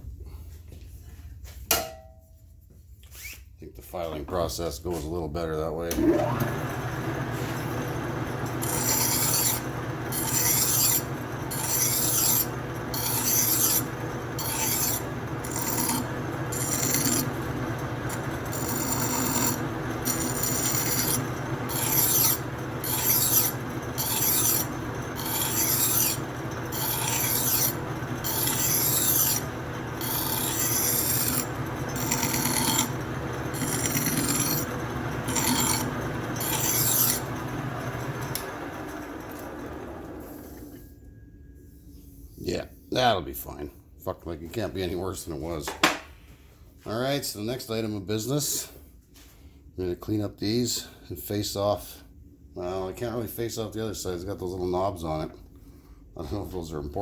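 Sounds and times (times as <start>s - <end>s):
lathe running hum: 5.9s - 40.8s
file rasping on metal: 8.4s - 37.4s.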